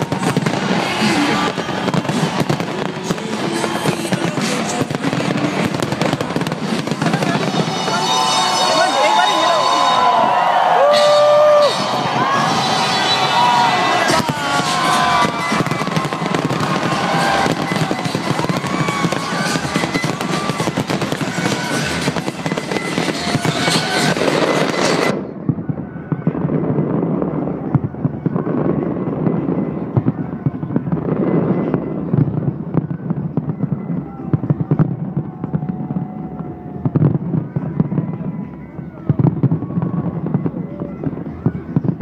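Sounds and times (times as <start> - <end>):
crowd voices: 0.0 - 42.0
fireworks bangs and crackle: 0.0 - 42.0
music soundtrack: 11.0 - 25.5.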